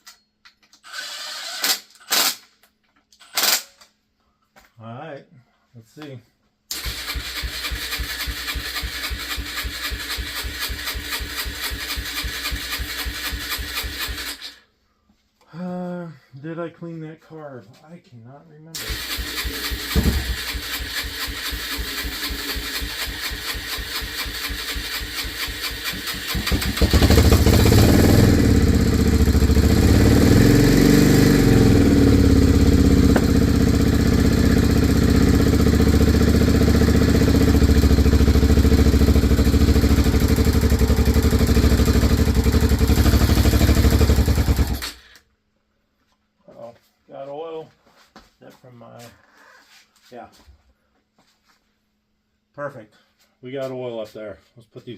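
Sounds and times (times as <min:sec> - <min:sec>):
motorcycle engine cranking and revving: 0:06.7 - 0:14.5, 0:18.8 - 0:45.2.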